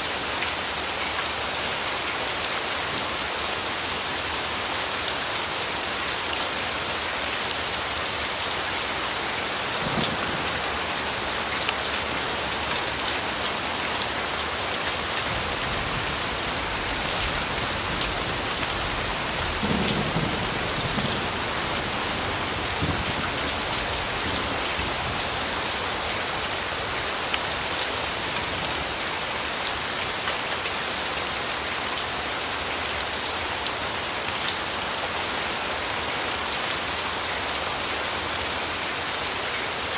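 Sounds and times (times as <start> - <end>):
rain pattering: 0.1 - 39.9.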